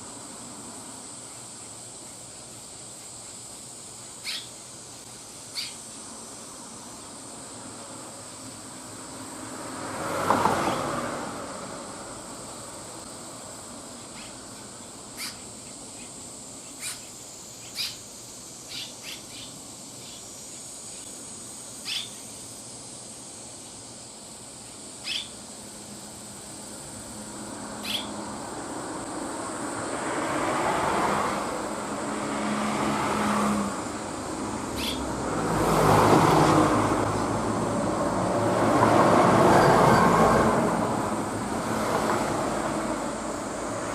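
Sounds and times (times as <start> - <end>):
vehicles passing: 6.0 - 16.4, 25.1 - 43.9.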